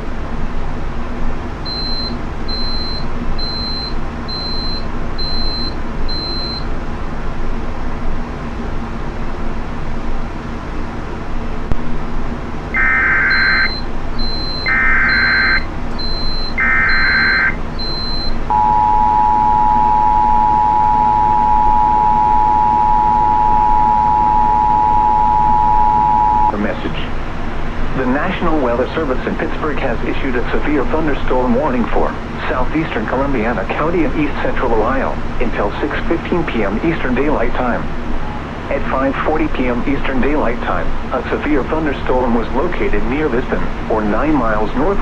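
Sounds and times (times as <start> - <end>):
low hum and hiss: 0.0 - 45.0
screeching data tones: 1.7 - 6.7, 12.8 - 26.6
two-tone attention signal: 1.7 - 6.7, 12.8 - 26.5
short high beeps: 12.8 - 26.5.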